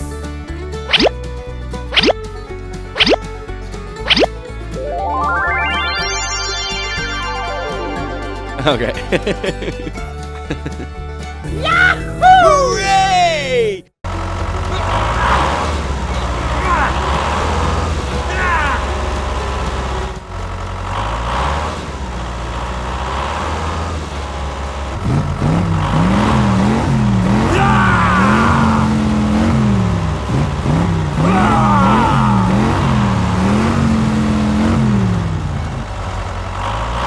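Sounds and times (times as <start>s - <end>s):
stepped up-and-down tone: 0.9s - 1.2s, 1.9s - 2.2s, 3.0s - 3.2s, 4.0s - 10.0s
simulated truck engine revving: 14.1s - 37.0s.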